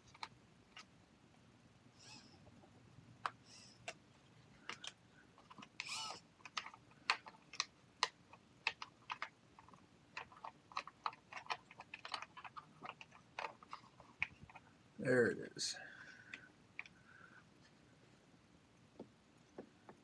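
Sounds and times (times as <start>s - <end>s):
plastic and metal parts clicking: 4.6s - 14.6s.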